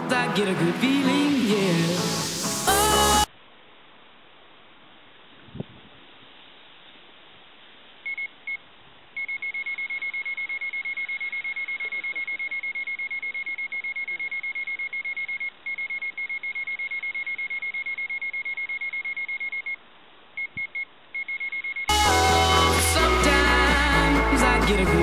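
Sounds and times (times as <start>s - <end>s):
bite alarm beeping: 8.1s - 8.6s, 9.2s - 19.8s, 20.4s - 22.2s.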